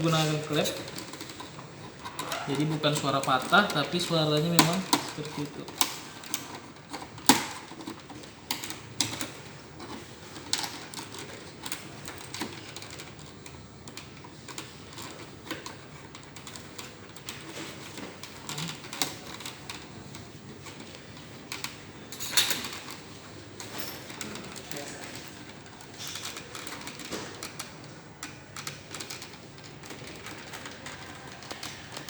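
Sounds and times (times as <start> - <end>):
plastic clips popping loose: 0.8 - 9.3.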